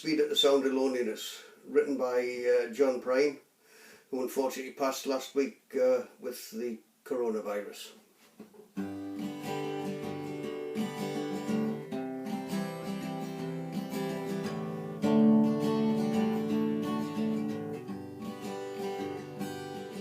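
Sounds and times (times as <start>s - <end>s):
acoustic guitar strumming chords: 8.8s - 20.0s.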